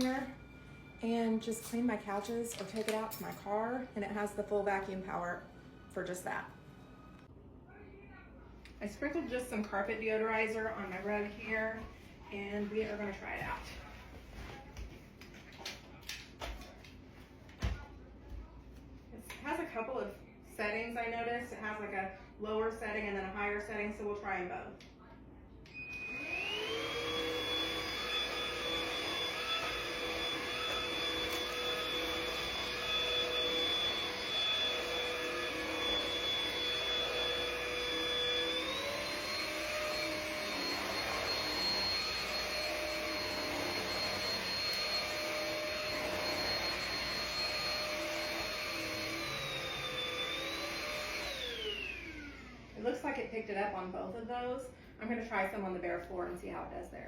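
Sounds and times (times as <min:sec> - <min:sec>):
vacuum cleaner motor whine: 0:00.0 - 0:01.7, 0:25.7 - 0:53.5.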